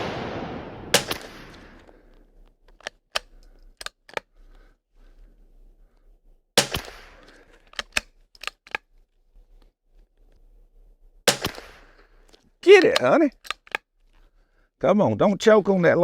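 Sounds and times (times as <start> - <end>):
rifle shot with echo: 0.0 - 2.1, 6.6 - 7.3, 11.3 - 12.0
rifle bolt metallic clicks: 1.0 - 4.4, 6.6 - 9.0, 11.3 - 14.0.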